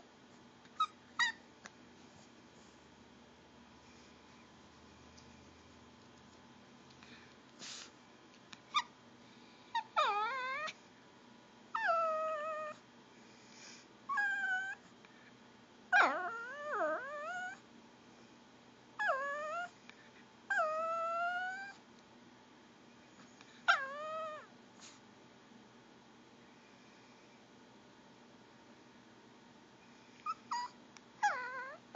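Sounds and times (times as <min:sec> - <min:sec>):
dog whining: 0:00.7 - 0:01.5, 0:08.7 - 0:09.0, 0:09.7 - 0:10.8, 0:11.7 - 0:12.8, 0:14.1 - 0:14.9, 0:15.9 - 0:17.6, 0:19.0 - 0:19.8, 0:20.5 - 0:21.8, 0:23.6 - 0:24.5, 0:30.2 - 0:31.9.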